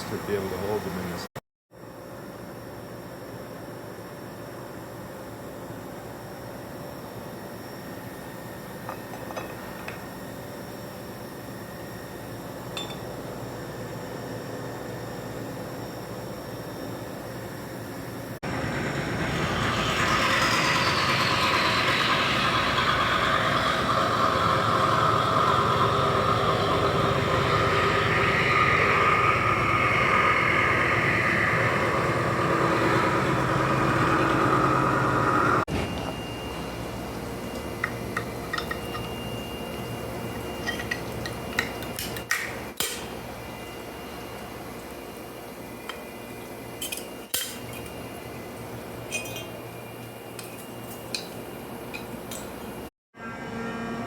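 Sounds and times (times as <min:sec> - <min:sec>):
milling machine whine: 0:07.1 - 0:54.0
machine hum: 0:18.3 - 0:50.4.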